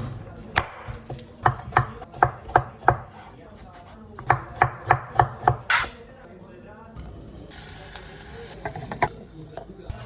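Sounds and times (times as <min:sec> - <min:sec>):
knife chopping on cutting board: 0:00.0 - 0:06.0.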